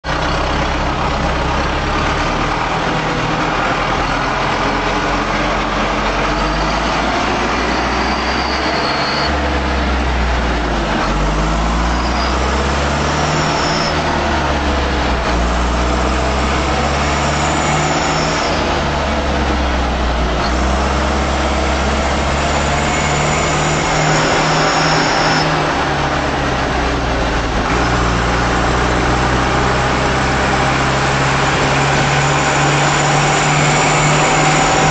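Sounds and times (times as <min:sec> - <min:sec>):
tractor diesel engine revving: 0:00.0 - 0:34.9
turbo whistle: 0:06.1 - 0:09.5, 0:11.7 - 0:14.3, 0:17.4 - 0:18.8, 0:22.6 - 0:25.8.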